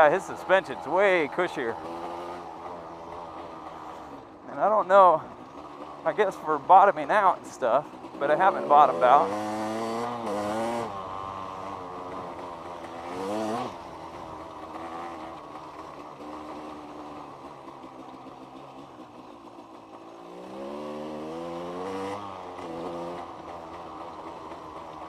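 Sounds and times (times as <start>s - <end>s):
two-stroke dirt bike engine: 0.0s - 25.0s.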